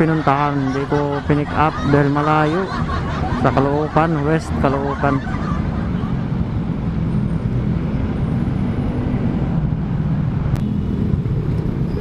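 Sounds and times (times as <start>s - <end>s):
road and wind noise: 0.0s - 12.0s.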